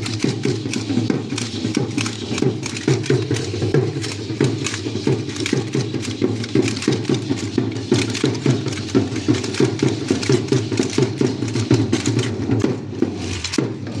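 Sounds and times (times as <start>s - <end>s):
dance drum beats: 0.0s - 14.0s
sharp rattling clicks: 0.0s - 14.0s.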